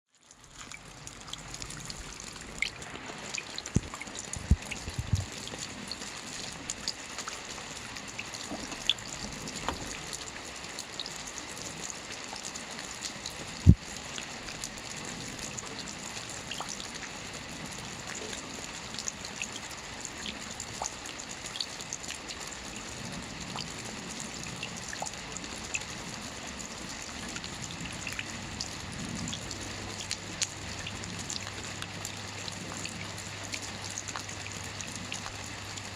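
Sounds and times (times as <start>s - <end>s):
steady rain patter: 0.1s - 35.9s
water drops dripping: 2.6s - 5.6s.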